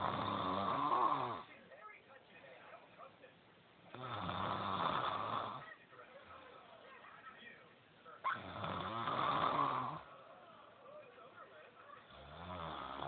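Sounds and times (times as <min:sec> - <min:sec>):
person snoring: 0:00.0 - 0:01.5, 0:03.9 - 0:05.6, 0:08.4 - 0:10.1, 0:12.1 - 0:13.0.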